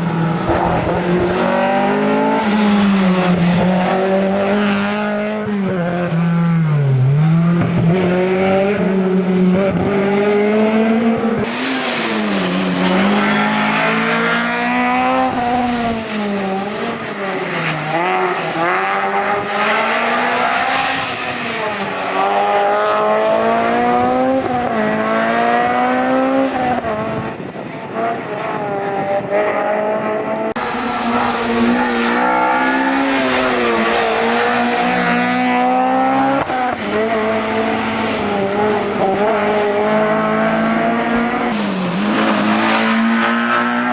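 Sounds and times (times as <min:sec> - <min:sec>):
rally car engine revving: 0:00.0 - 0:43.9.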